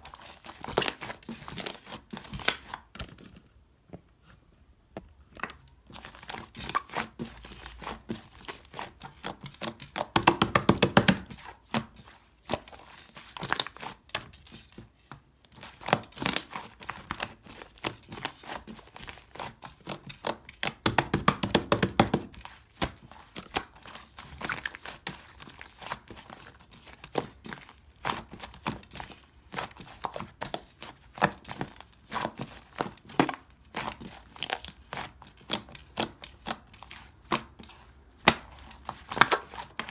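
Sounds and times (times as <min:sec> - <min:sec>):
slime crackling and popping: 0:15.7 - 0:29.0, 0:38.2 - 0:39.9.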